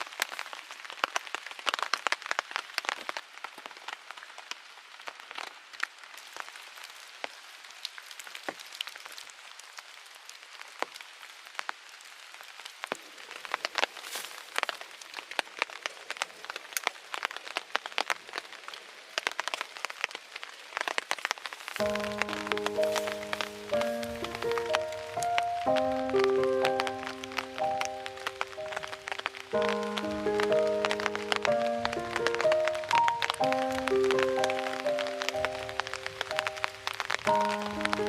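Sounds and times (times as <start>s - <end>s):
wood fire crackling and popping: 0.0s - 38.0s
faint hiss: 18.6s - 38.0s.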